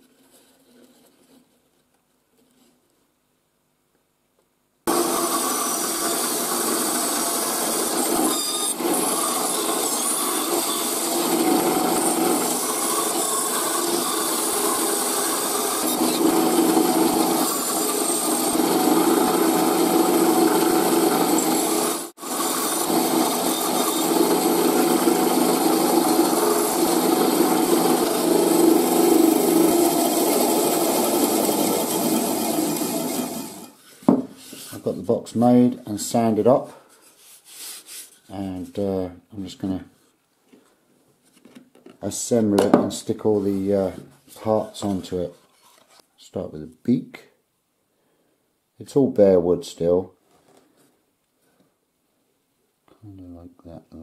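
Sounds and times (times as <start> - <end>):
power sander sanding wood: 4.9 - 34.8.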